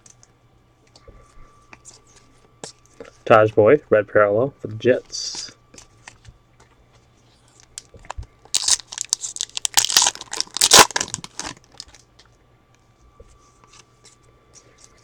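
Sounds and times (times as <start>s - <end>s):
card handling noise: 7.5s - 12.3s
wrapper tearing and crumpling: 8.5s - 12.0s.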